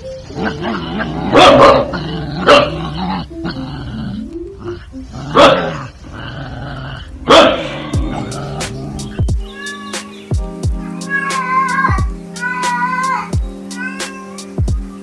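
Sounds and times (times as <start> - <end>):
dog barking and growling: 0.4 - 9.2.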